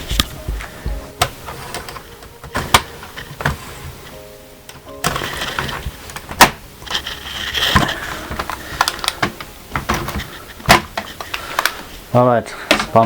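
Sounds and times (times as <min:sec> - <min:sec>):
plastic scraping on plastic: 0:00.0 - 0:04.2, 0:05.0 - 0:12.0
plastic clips snapping: 0:04.7 - 0:11.8.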